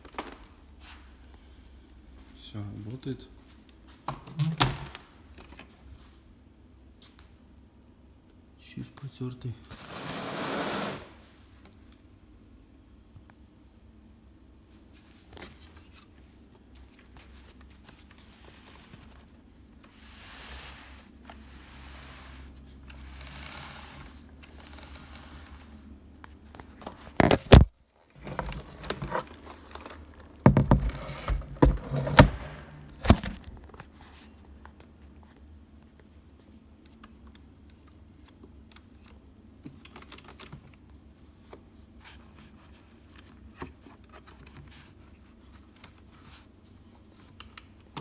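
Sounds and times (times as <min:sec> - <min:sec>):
faint clicks and rustling: 0:22.4 - 0:48.0
handling knocks and rattles: 0:26.6 - 0:34.0.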